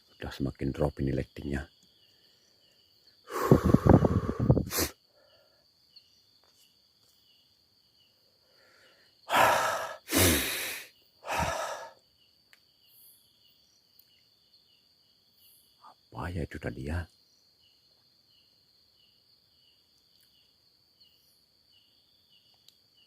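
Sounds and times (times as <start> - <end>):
crickets chirping: 0.0 - 23.0
heavy breaths close to microphone: 3.2 - 5.7, 8.5 - 12.0.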